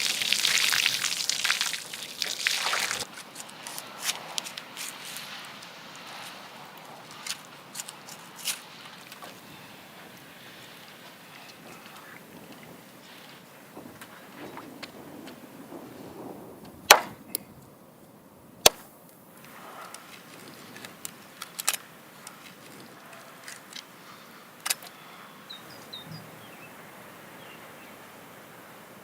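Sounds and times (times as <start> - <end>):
sharp knocks or chops: 16.9 - 17.2
faint bird chirps: 24.0 - 28.1.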